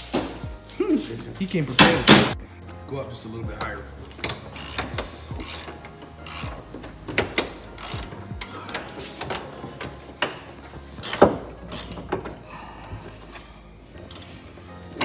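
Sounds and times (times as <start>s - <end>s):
hand tools clanking on metal: 1.6s - 2.4s.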